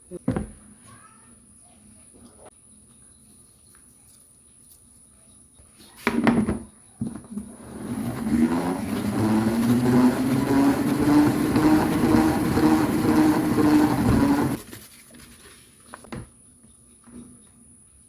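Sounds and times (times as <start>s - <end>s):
small electric motor humming: 7.6s - 14.6s.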